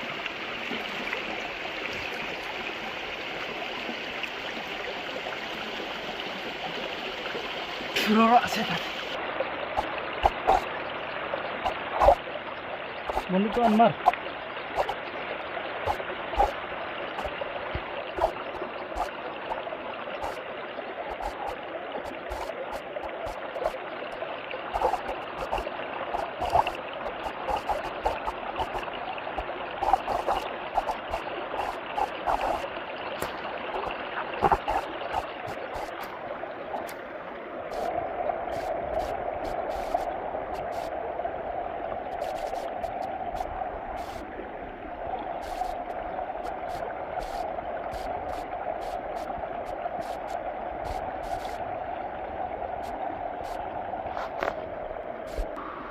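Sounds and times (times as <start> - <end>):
stream water flowing and gurgling: 0.0 - 55.9
small splashes and clicks: 7.9 - 15.2, 15.8 - 37.1, 42.1 - 44.2, 45.4 - 51.6, 52.8 - 54.7.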